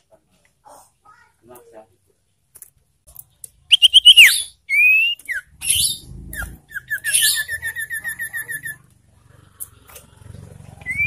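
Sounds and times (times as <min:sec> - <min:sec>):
bird calling: 0:03.7 - 0:08.9, 0:10.8 - 0:11.0.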